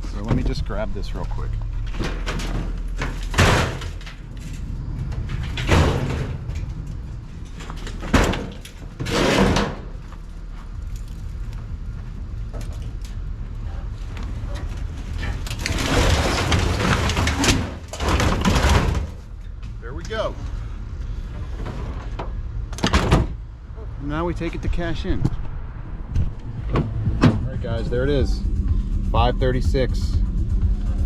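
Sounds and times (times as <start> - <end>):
low rumble: 0.0 - 31.0
sheet metal scraping: 7.4 - 10.0, 14.4 - 19.2.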